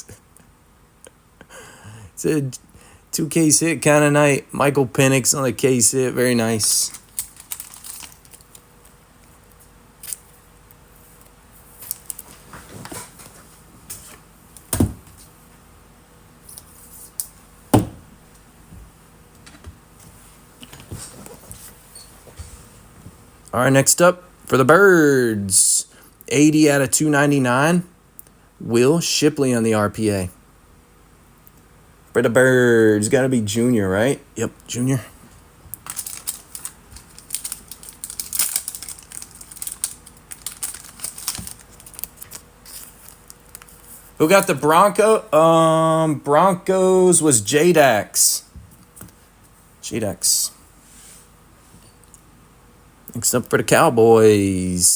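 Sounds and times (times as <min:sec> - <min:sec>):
trading cards and packaging crinkling: 0:05.7 - 0:10.4, 0:11.1 - 0:13.1, 0:35.7 - 0:45.0
knocks on table: 0:17.8 - 0:18.0.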